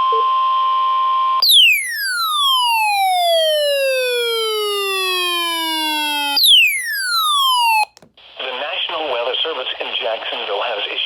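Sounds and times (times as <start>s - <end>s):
steady single-pitch tone: 1.4s - 7.9s
electronic siren alert tone falling: 1.4s - 8.0s.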